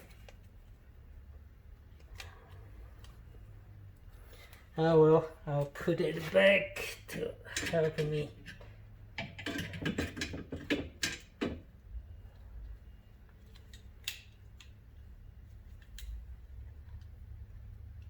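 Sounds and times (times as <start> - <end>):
metal hinge clicks and rattles: 9.2 - 11.6.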